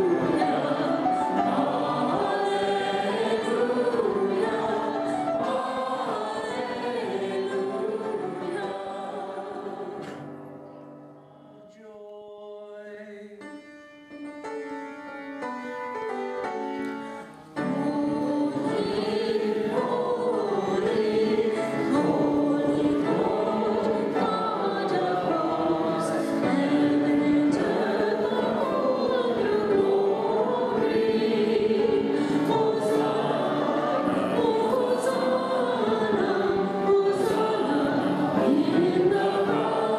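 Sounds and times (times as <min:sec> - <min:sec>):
church choir singing: 0:00.0 - 0:13.4, 0:16.6 - 0:39.9.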